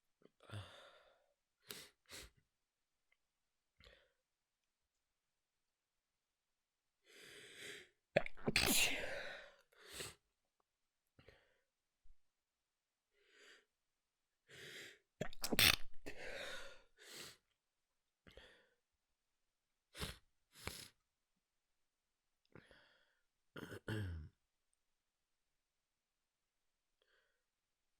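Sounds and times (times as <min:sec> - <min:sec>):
gasping in-breath: 0:07.1 - 0:07.9, 0:16.1 - 0:17.4, 0:22.6 - 0:23.2
person sneezing: 0:08.2 - 0:09.4, 0:15.4 - 0:16.6.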